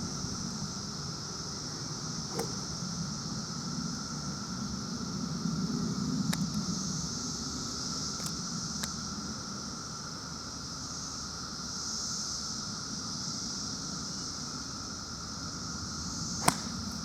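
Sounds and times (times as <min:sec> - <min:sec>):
steady high hiss: 0:00.0 - 0:17.0
golf club striking ball: 0:02.2 - 0:02.8, 0:16.4 - 0:17.0.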